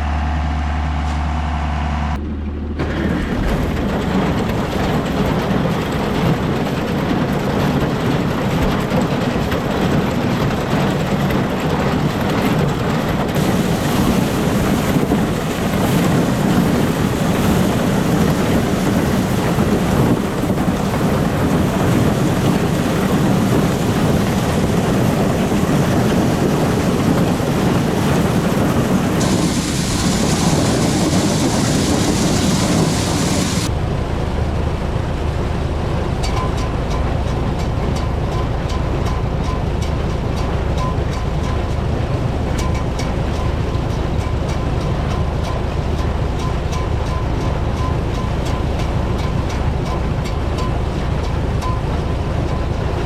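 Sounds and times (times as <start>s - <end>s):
engine idling: 0.0s - 53.0s
tractor rumbling and rattling: 0.0s - 53.0s.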